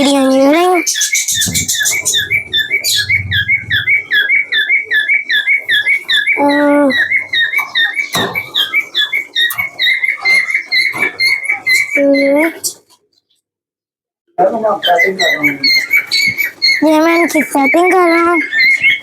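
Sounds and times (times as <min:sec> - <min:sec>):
caged birds chirping: 0:00.0 - 0:13.5, 0:14.4 - 0:19.0
low bird call: 0:01.1 - 0:09.6.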